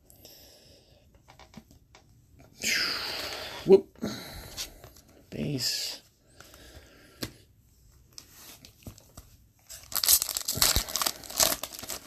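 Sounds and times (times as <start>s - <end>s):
wrapper crinkling and tearing: 9.7s - 12.0s.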